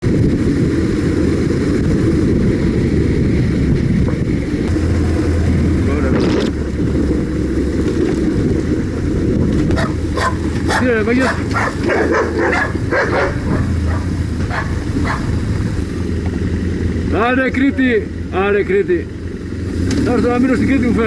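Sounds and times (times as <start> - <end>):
wind noise on microphone: 0.0 - 15.9
motorcycle engine rumble: 0.0 - 21.0.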